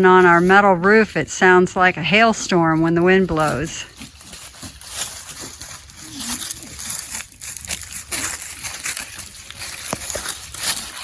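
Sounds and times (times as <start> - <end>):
dry leaves rustling and crunching: 3.2 - 11.0.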